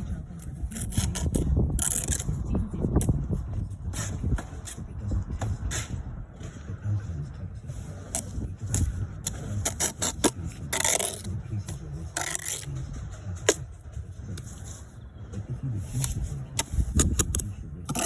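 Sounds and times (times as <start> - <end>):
trowel scraping through mortar: 0.0 - 2.4, 7.8 - 12.8, 15.8 - 18.0.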